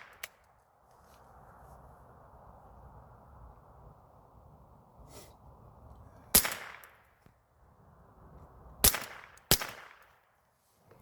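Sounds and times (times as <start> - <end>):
rifle shots with echo: 8.8 - 10.1.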